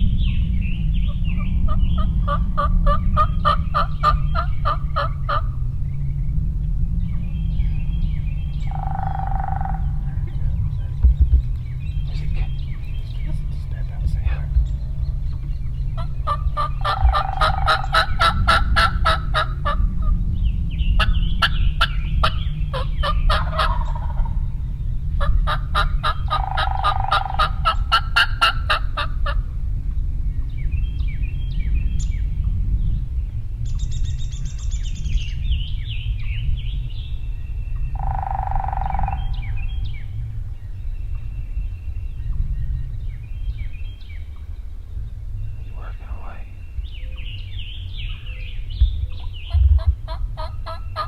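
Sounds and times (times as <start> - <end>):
small birds chirping: 0.0 - 18.3, 30.0 - 51.0
steady low rumble: 0.0 - 51.0
turkey gobbling: 8.8 - 9.9, 16.3 - 19.8, 22.2 - 24.3, 25.2 - 29.4, 38.0 - 39.4.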